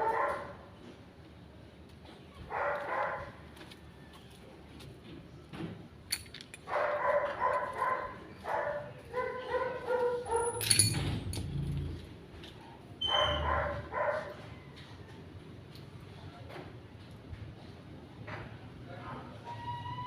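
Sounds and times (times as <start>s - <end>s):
dog barking: 0.0s - 0.6s, 2.5s - 3.4s, 6.7s - 10.6s, 13.1s - 14.4s.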